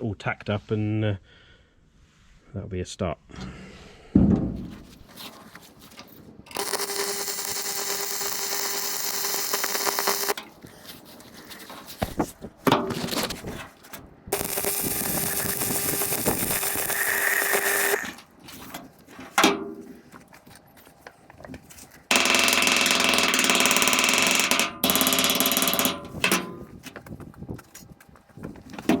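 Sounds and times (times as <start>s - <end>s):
constant hum: 4.2s - 29.0s
welder crackling buzz: 6.5s - 10.4s, 14.3s - 18.3s, 22.1s - 26.6s.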